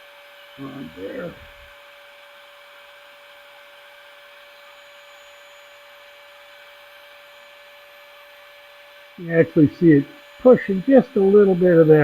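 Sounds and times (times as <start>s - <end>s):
heat gun blowing air: 0.0s - 12.0s.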